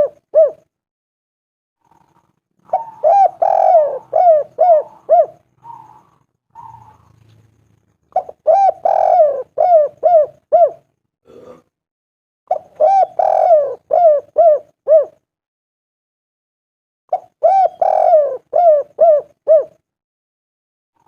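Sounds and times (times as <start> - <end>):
dove cooing: 0.0 - 0.7, 1.8 - 7.4, 8.1 - 10.9, 12.5 - 15.3, 17.1 - 19.8.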